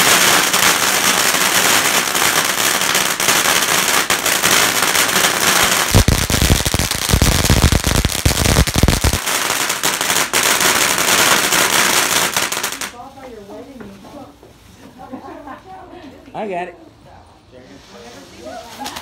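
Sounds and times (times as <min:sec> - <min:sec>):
fireworks popping and crackling: 0:00.0 - 0:13.0, 0:18.8 - 0:19.0.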